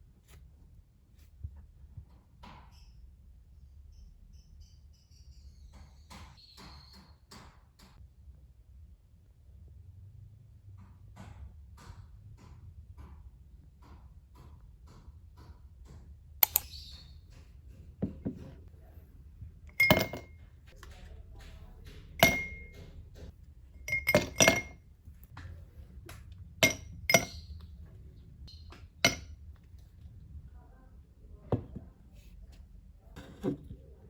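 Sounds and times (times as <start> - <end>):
glass clinking: 19.7 - 20.4, 21.9 - 24.8, 26.6 - 27.6, 29.0 - 29.4.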